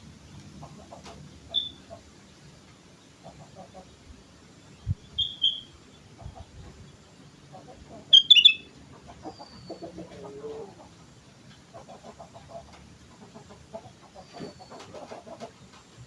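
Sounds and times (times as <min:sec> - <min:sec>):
bird whistled calls: 0:01.5 - 0:01.8, 0:05.0 - 0:05.7, 0:08.1 - 0:08.7
low clucking: 0:07.4 - 0:16.0.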